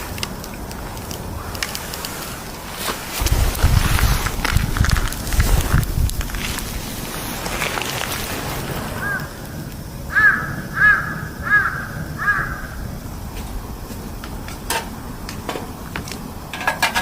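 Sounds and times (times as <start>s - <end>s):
sharp clicks: 0.0s - 2.6s
crow cawing: 8.9s - 12.9s.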